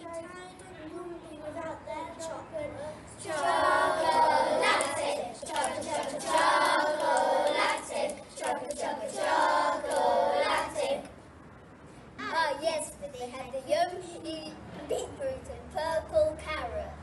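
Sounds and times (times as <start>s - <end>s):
children singing together: 3.2s - 11.1s.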